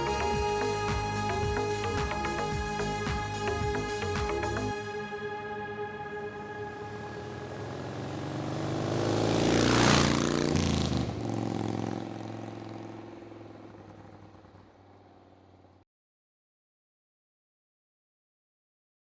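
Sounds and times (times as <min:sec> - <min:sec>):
vehicle driving past: 0:04.6 - 0:15.8.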